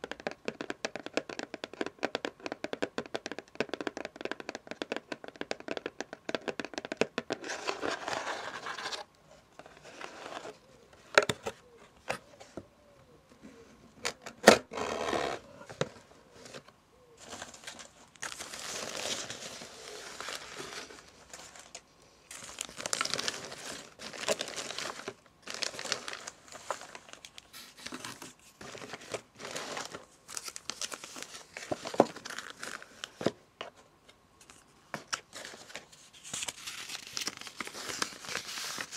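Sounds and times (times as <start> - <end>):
paper and cardboard crinkling and tearing: 7.4 - 10.6, 14.6 - 33.4, 34.4 - 38.9.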